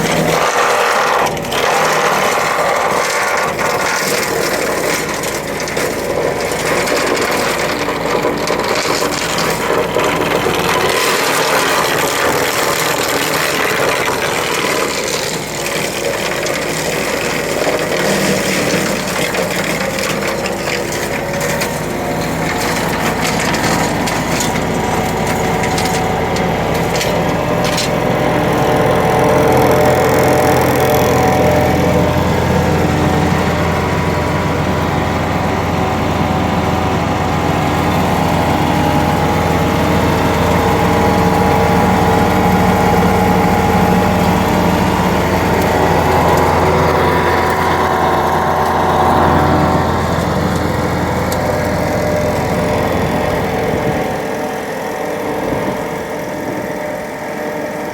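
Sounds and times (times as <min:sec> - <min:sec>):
wood cracking and splintering: 0:00.0 - 0:33.7, 0:37.7 - 0:54.8
wood chipper engine: 0:00.0 - 0:57.9.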